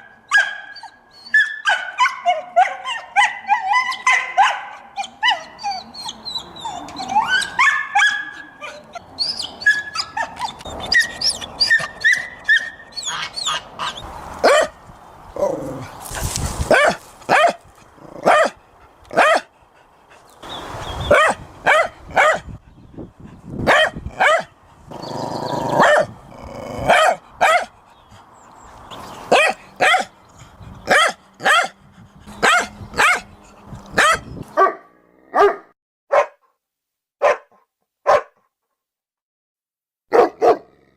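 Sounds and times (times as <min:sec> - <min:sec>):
dogs barking: 0:00.0 - 0:05.6, 0:06.8 - 0:14.8, 0:16.7 - 0:19.5, 0:21.1 - 0:22.5, 0:23.6 - 0:24.5, 0:25.7 - 0:26.2, 0:26.8 - 0:27.8, 0:29.2 - 0:30.2, 0:30.8 - 0:36.4, 0:37.2 - 0:38.4, 0:40.1 - 0:40.7
dog whining yelps: 0:00.3 - 0:14.7.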